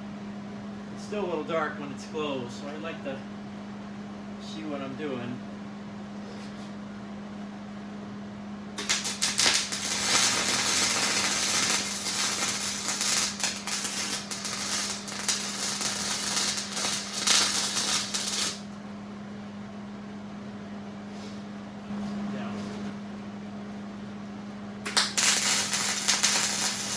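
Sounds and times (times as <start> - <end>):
steady low hum: 0.0 - 26.9
welding arc crackling: 8.8 - 18.8, 24.9 - 26.9.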